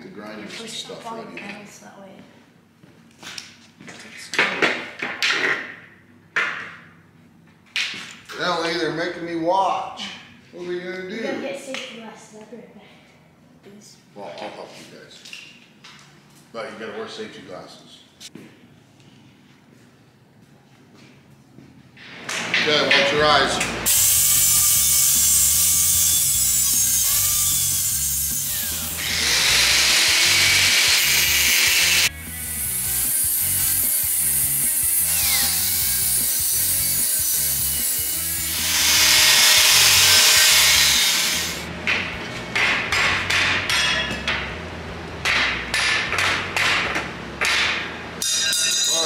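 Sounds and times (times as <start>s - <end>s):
angle grinder cutting: 22.6s - 41.7s.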